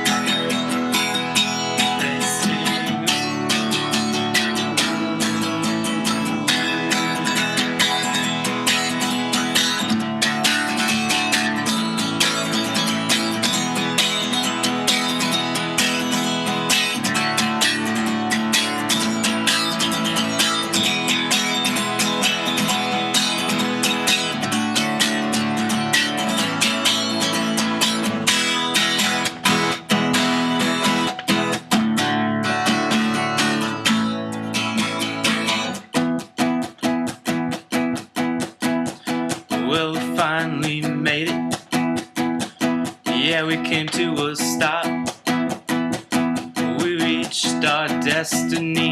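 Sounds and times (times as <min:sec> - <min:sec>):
acoustic guitar strumming: 0:00.0 - 0:48.9.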